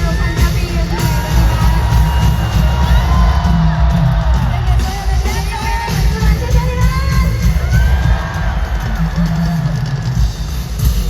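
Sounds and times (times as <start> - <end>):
live pop concert music: 0.0 - 11.0.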